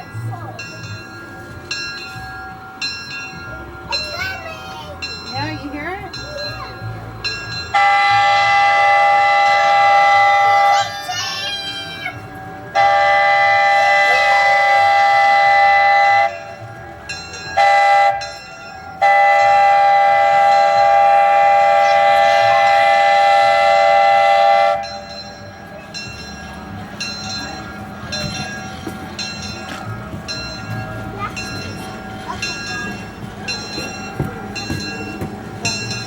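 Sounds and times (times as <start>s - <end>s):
locomotive whistle blasts: 7.8s - 10.7s, 12.8s - 16.6s, 17.6s - 18.3s, 19.0s - 25.0s
train wheels clicking: 12.2s - 36.0s.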